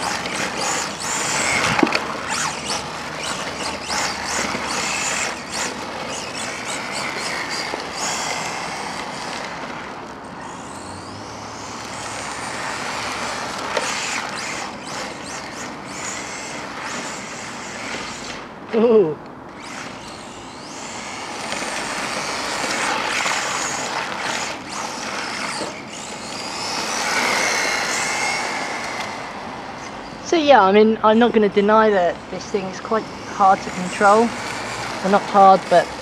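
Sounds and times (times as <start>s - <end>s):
electric motor whining: 0.0s - 36.0s.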